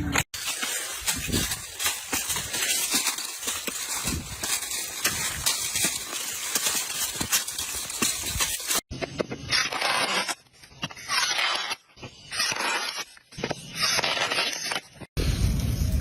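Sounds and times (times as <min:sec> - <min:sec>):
vegetables crunching and scraping: 0:00.1 - 0:08.9.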